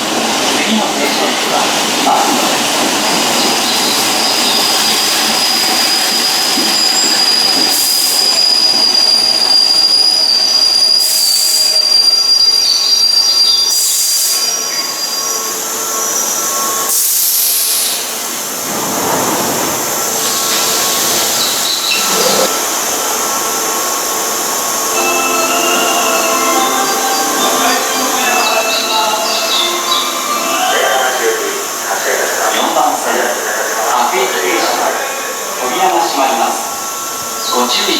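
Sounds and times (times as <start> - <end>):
train running noise: 0.0 - 37.9
train wheels squealing: 3.4 - 18.1.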